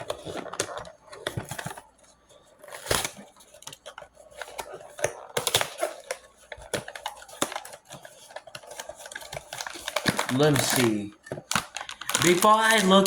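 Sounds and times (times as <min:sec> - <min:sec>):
cardboard and plastic rustling: 0:00.0 - 0:13.0.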